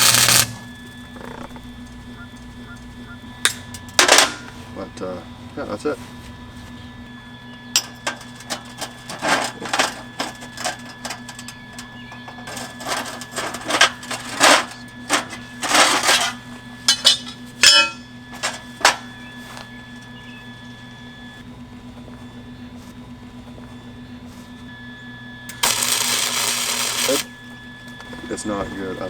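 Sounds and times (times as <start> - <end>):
rasping bursts on steel: 0.0 - 0.6, 25.5 - 27.3
steady low hum: 0.0 - 29.0.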